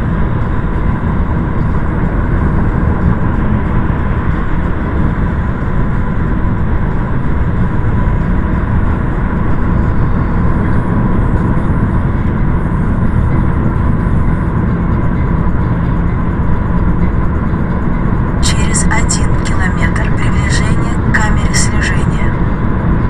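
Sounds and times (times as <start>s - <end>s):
car driving road noise: 0.0s - 18.4s
thin steady whine: 0.0s - 23.0s.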